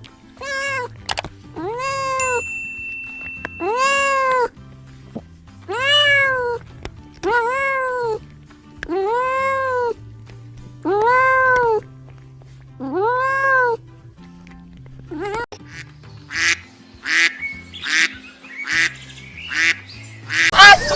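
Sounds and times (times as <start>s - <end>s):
quiet background music: 0.0s - 20.9s
cat meowing: 0.4s - 0.9s, 5.7s - 6.6s, 7.2s - 8.2s.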